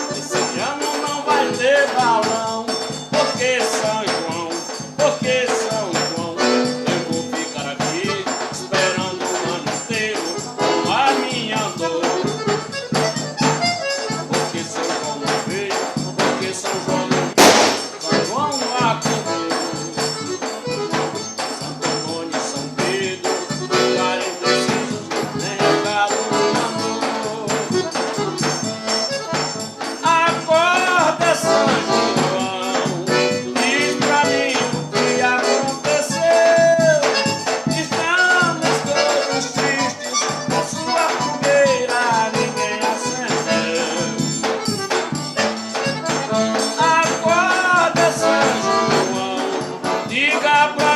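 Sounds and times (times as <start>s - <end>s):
shaker percussion: 0.0s - 50.9s
festive song with sustained melody: 12.2s - 14.5s, 15.9s - 22.1s, 23.4s - 30.0s, 31.0s - 36.2s, 38.6s - 50.3s.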